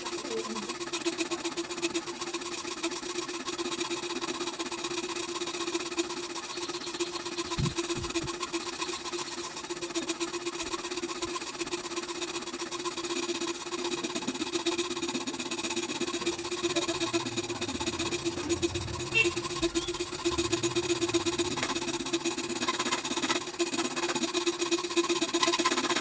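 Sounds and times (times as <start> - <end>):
fast buzzing rattle: 0.0 - 26.0
power tool motor humming: 5.9 - 11.3, 14.2 - 26.0.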